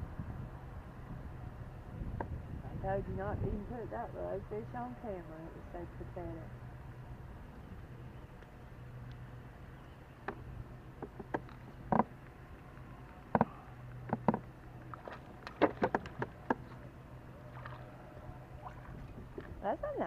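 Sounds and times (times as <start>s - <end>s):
boat engine low hum: 0.0s - 20.0s
sharp clicks and knocks: 11.0s - 12.4s, 13.1s - 16.8s.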